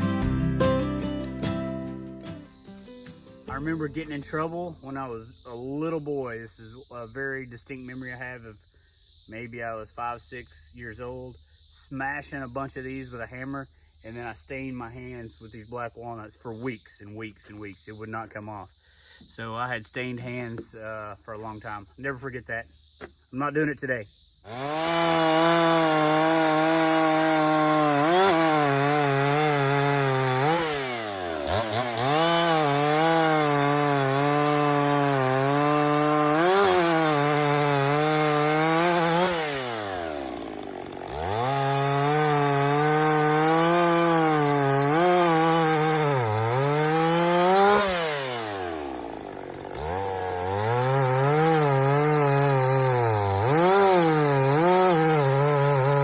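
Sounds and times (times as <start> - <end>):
chainsaw cutting log: 3.0 - 5.0, 24.5 - 56.0.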